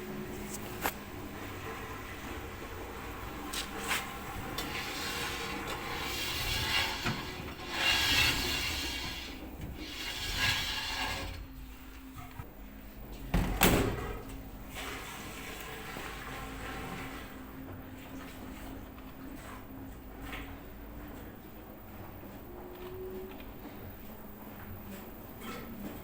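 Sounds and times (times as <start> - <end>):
dryer drum scraping: 0.0 - 12.5, 13.3 - 20.4.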